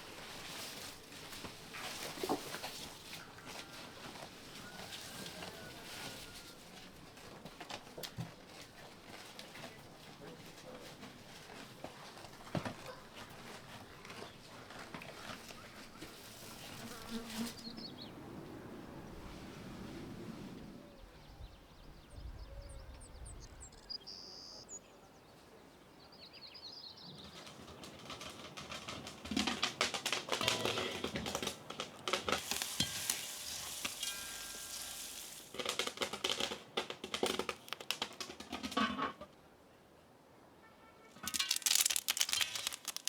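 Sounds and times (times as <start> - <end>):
dry corn leaves rustling: 0.0 - 12.5, 13.2 - 17.8, 27.4 - 38.4, 41.2 - 43.0
high bird chirps: 22.4 - 24.8.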